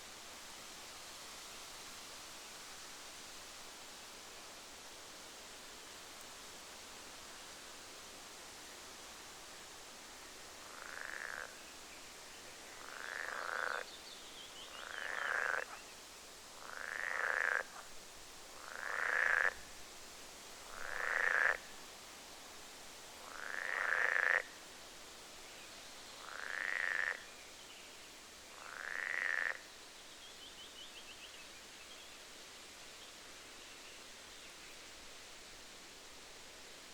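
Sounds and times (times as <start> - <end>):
wind hissing in trees: 0.0 - 36.9
frog croaking: 10.7 - 11.5, 12.8 - 13.9, 14.8 - 15.8, 16.6 - 17.8, 18.6 - 19.6, 20.7 - 21.7, 23.3 - 24.6, 26.2 - 27.2, 28.6 - 29.6.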